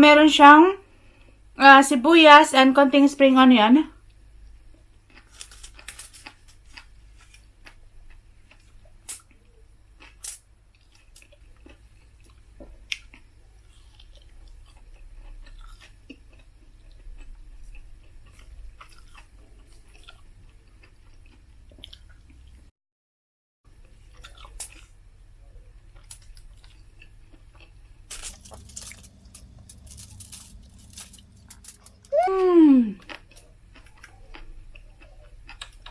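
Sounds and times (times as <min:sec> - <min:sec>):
small clicks and crunches: 0:05.1 - 0:07.8, 0:27.6 - 0:32.2
person chewing: 0:10.0 - 0:22.6, 0:24.0 - 0:24.9, 0:25.9 - 0:35.9
steady low hum: 0:27.8 - 0:35.8.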